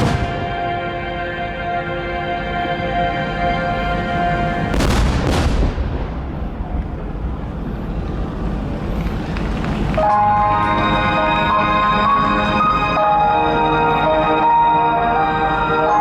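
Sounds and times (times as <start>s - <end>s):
echo and crackle of fireworks: 0.0s - 0.8s, 4.6s - 8.1s.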